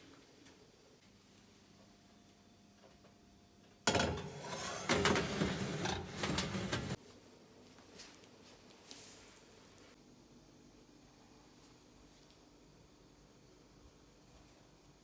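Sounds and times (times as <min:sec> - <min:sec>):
clattering and rattling handling noise: 0:03.9 - 0:07.0.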